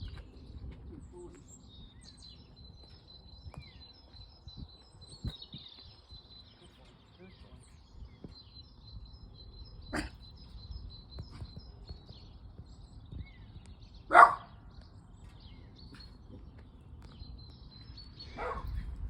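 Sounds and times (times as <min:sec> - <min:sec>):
small birds chirping: 0:00.0 - 0:19.0
dog barking: 0:09.9 - 0:10.2, 0:14.1 - 0:14.5, 0:18.4 - 0:18.7.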